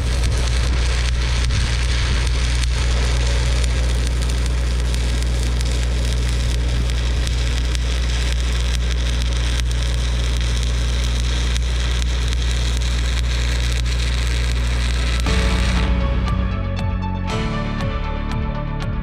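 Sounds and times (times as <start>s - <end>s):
arc welding crackling sizzle: 0.0s - 16.1s
music: 15.1s - 19.0s.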